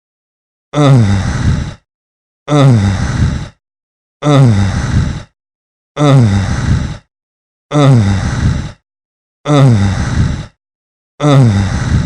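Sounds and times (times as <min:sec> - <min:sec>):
breathy sultry moan: 0:00.7 - 0:01.9, 0:02.5 - 0:03.6, 0:04.2 - 0:05.4, 0:06.0 - 0:07.1, 0:07.7 - 0:08.8, 0:09.4 - 0:10.6, 0:11.2 - 0:12.0.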